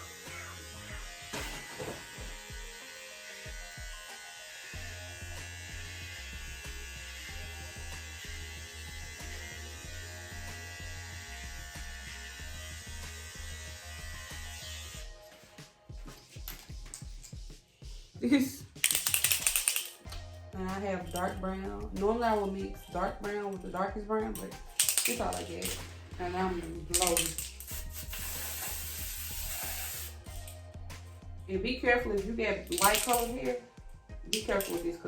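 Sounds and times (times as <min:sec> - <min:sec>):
small electric motor buzzing: 0:00.0 - 0:15.1, 0:26.4 - 0:30.6
music playing: 0:00.0 - 0:35.0.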